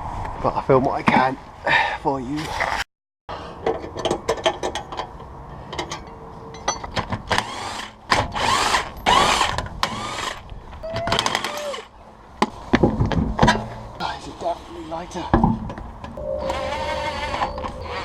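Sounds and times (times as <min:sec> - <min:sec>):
power tool whirring: 0:07.3 - 0:10.4.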